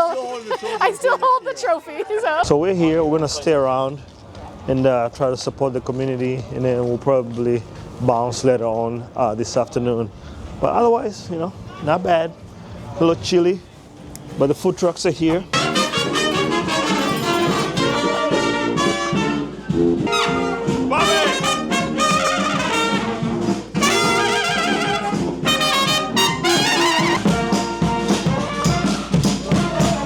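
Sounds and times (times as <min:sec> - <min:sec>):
upbeat jazzy brass music: 0:15.5 - 0:30.0.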